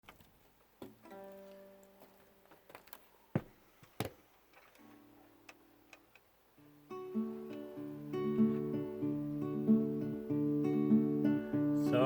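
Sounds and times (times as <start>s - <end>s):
plucked guitar notes: 1.0s - 2.4s, 6.6s - 12.0s.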